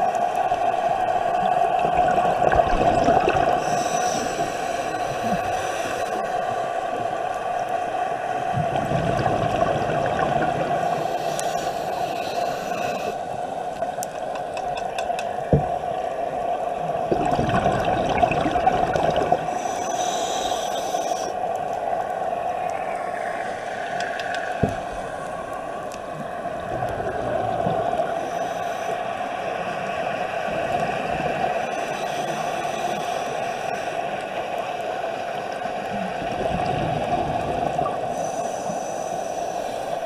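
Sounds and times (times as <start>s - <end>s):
bubbles gurgling: 1.2s - 3.8s, 8.5s - 11.0s, 16.9s - 19.6s, 36.2s - 38.1s
regulator breathing: 3.6s - 6.5s, 10.8s - 13.3s, 19.5s - 21.4s, 28.0s - 29.3s, 31.6s - 34.1s, 38.1s - 40.0s
sharp clicks: 23.9s - 24.6s.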